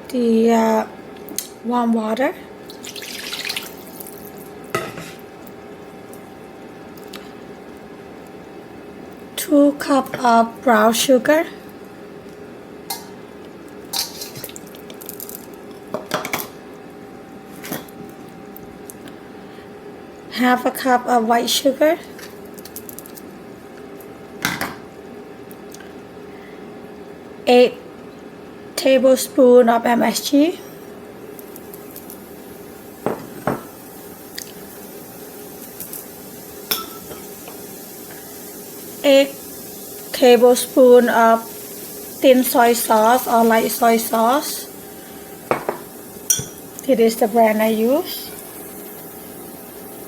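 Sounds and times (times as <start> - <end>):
faint steady hum: 0.0 - 50.0
dishes and utensils clinking: 36.7 - 37.3, 45.5 - 46.6.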